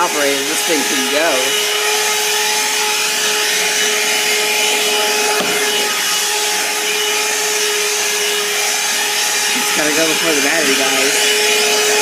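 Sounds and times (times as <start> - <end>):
handheld vacuum motor whine: 0.0 - 12.0
brief knock: 5.4 - 5.6.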